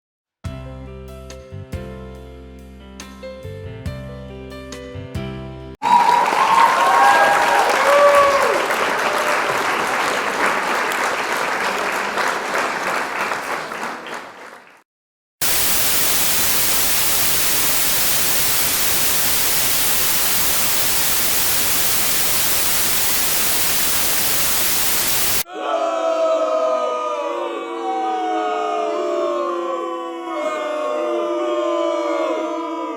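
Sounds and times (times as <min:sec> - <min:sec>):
applause: 0:05.8 - 0:14.8
white-noise static: 0:15.4 - 0:25.4.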